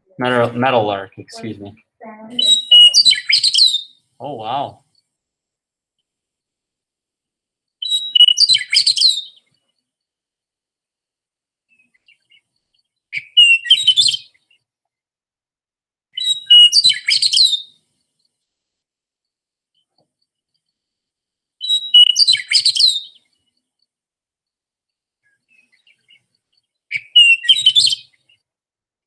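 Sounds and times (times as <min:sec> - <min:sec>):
bird singing whistled notes: 0:02.4 - 0:04.0, 0:07.8 - 0:09.4, 0:13.2 - 0:14.4, 0:16.2 - 0:17.8, 0:21.6 - 0:23.3, 0:26.9 - 0:28.2.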